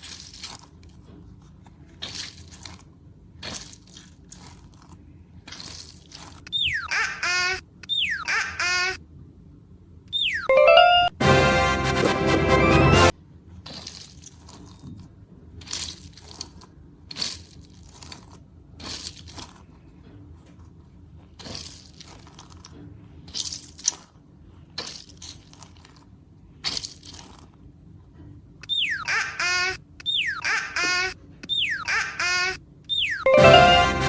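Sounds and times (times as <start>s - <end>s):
cartoon falling whistle: 32.9s - 34.0s.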